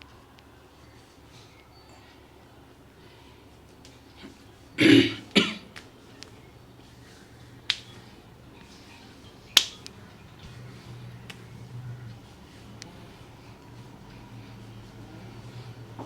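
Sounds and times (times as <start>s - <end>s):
sharp cracks: 7.6s - 8.0s, 9.5s - 10.6s
hand smacks: 7.7s - 8.1s, 9.5s - 10.6s, 11.2s - 11.5s.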